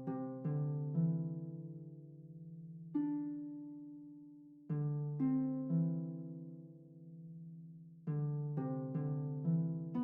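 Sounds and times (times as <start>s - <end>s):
background music notes: 0.0s - 10.0s.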